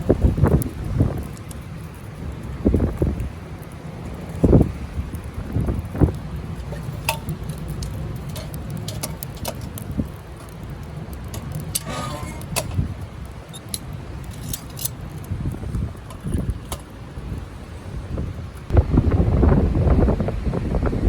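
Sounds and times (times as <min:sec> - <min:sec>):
wind buffeting microphone: 0:00.0 - 0:21.0
light clicks and clinks: 0:06.0 - 0:17.0.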